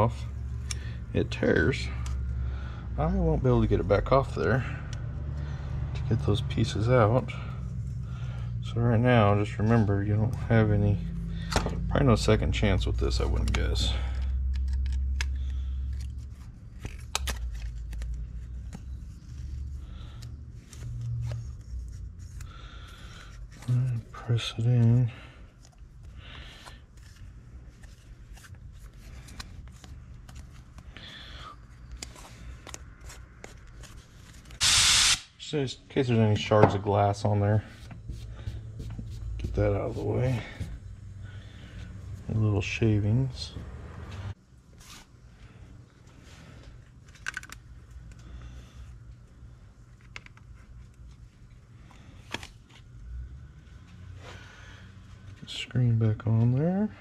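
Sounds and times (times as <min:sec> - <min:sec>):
low steady hum: 0:00.0 - 0:34.6, 0:35.2 - 0:57.0
loud blast of hissing air: 0:34.6 - 0:35.4
plastic parts clicking: 0:47.0 - 0:48.2.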